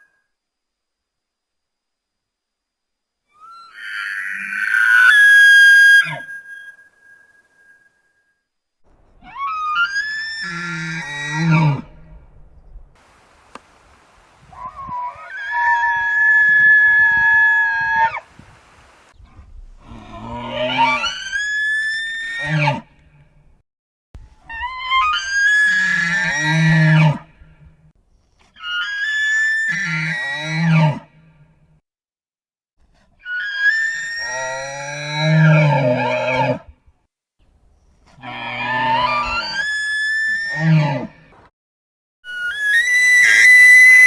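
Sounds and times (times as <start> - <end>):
cartoon dinosaur trumpeting call: 3.4 - 7.8, 42.3 - 44.0.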